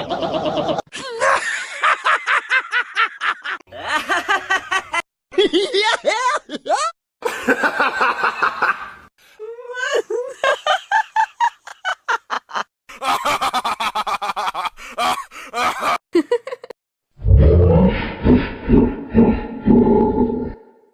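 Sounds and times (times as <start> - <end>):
deep low laugh: 0.0 - 4.7, 17.2 - 20.7.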